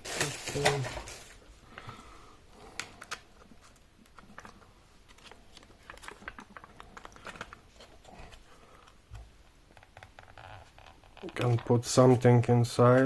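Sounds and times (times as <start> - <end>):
plastic cover clicking and crackling: 4.0 - 8.0, 9.7 - 11.8.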